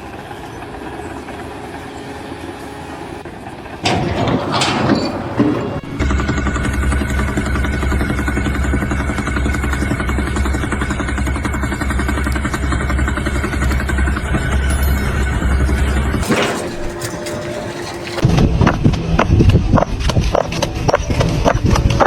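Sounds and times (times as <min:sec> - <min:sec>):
engine running with low rumble: 0:05.9 - 0:16.2.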